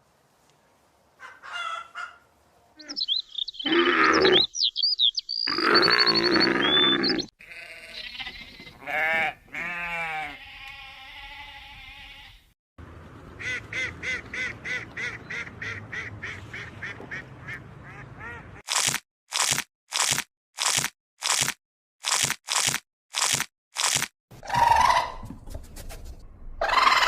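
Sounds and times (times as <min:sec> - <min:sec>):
farm animals bleating: 0:03.6 - 0:04.5, 0:05.5 - 0:12.5
sharp crunching sounds: 0:18.6 - 0:24.1.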